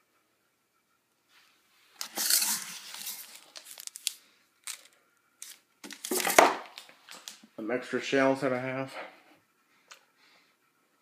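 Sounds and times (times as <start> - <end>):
packaging crinkling and rustling: 2.0 - 7.4.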